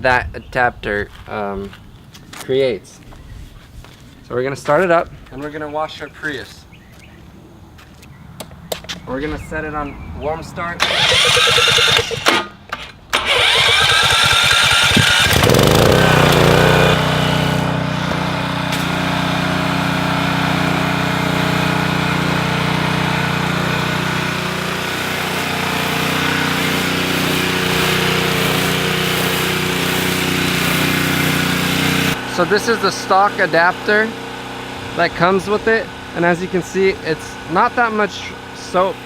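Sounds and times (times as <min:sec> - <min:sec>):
petrol engine cranking and running: 0:10.8 - 0:35.0.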